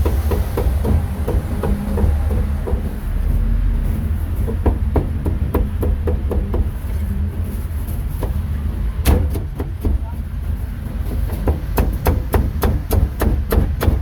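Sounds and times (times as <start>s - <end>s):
low rumble: 0.0s - 9.0s.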